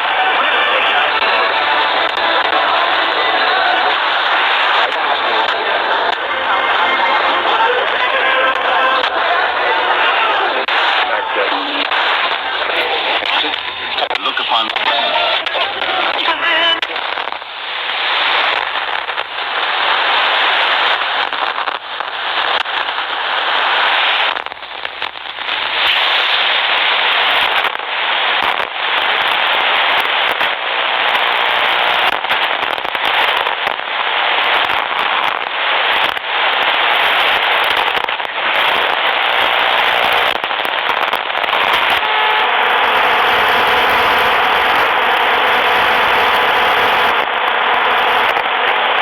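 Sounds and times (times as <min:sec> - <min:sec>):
radio static hiss and crackles: 0:00.0 - 0:49.0.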